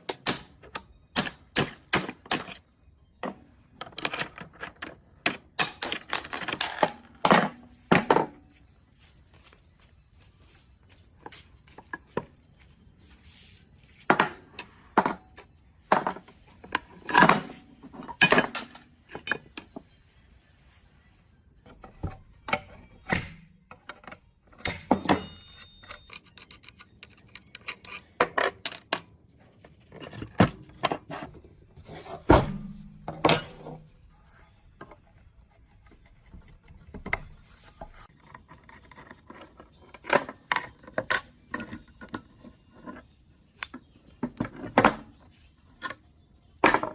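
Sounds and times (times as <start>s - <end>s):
metal parts clinking and scraping: 0.0s - 8.6s, 10.4s - 20.0s, 21.6s - 35.0s.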